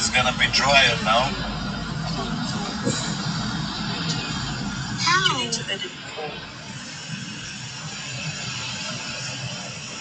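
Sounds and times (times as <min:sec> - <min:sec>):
car wash rushing noise: 0:00.0 - 0:10.0.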